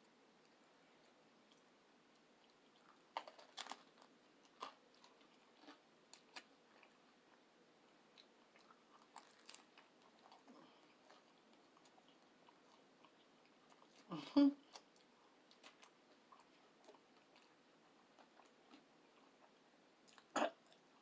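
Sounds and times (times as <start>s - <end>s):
chewing food: 0.1s - 21.0s
small crunchy clicks: 0.4s - 7.0s.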